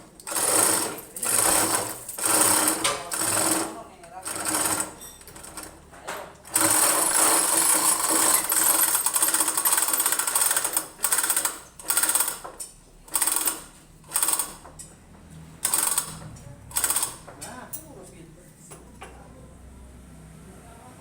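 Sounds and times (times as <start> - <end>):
chain hoist rattling: 0.2 - 3.7, 6.5 - 12.4.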